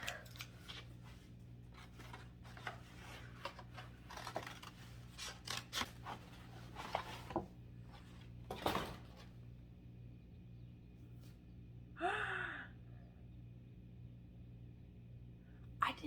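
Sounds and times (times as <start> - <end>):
steady low hum: 0.0 - 16.0
packaging rustling and crinkling: 0.4 - 8.3.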